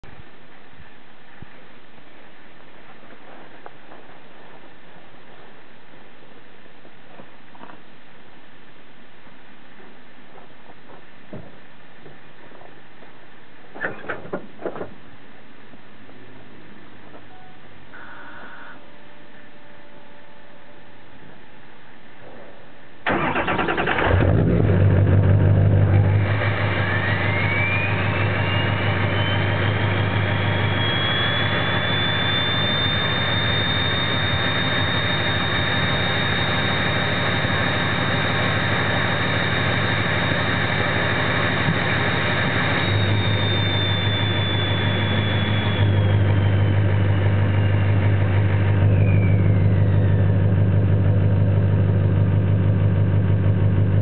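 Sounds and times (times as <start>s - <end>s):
high turbo whistle: 17.9s - 21.1s, 26.1s - 50.9s
diesel engine running: 23.1s - 54.0s.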